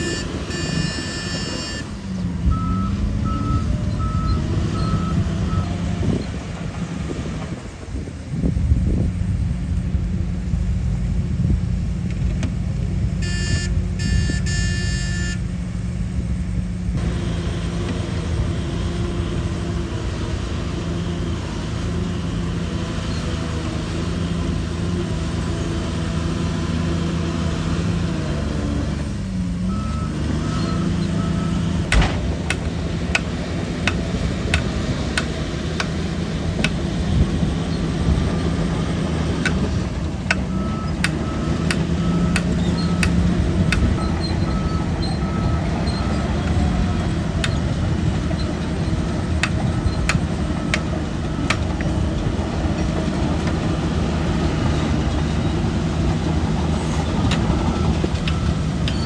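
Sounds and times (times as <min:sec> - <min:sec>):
reversing alarm beeping: 0:00.0 - 0:05.8, 0:13.2 - 0:15.5, 0:29.7 - 0:35.9, 0:40.3 - 0:46.3
bulldozer diesel engine running: 0:00.0 - 0:59.0
sharp metal clanks: 0:31.9 - 0:33.3.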